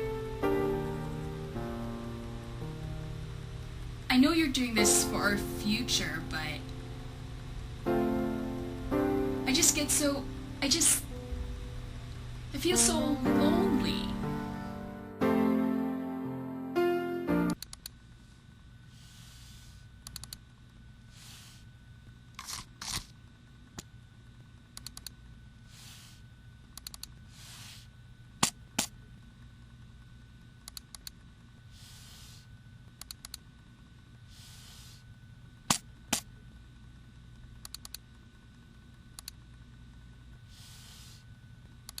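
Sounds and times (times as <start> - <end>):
computer mouse clicking: 17.5 - 18.0, 20.0 - 20.4, 24.8 - 25.2, 26.8 - 27.1, 30.6 - 31.2, 33.0 - 33.4, 37.6 - 38.0, 39.2 - 39.4.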